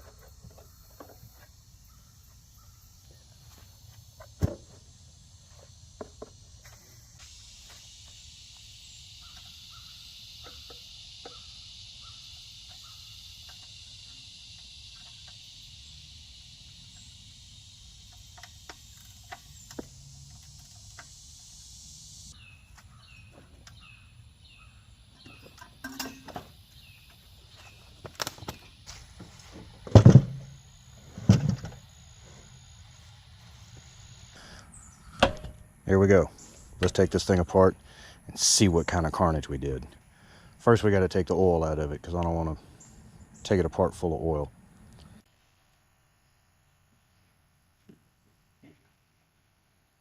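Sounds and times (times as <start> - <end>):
high insect chorus: 0.0 - 47.1
loud thumps: 29.8 - 30.6.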